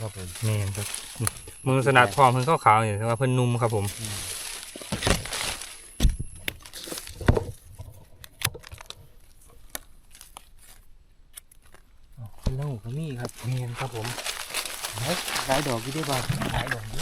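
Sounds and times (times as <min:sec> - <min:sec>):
dry leaves rustling and crackling: 0:00.0 - 0:07.3, 0:12.6 - 0:17.0.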